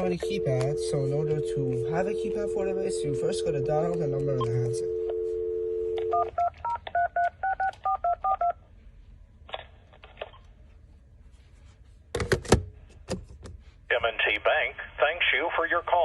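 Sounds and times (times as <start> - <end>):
phone dial tone: 0.0 - 8.6
touch-tone beeps: 0.0 - 8.6.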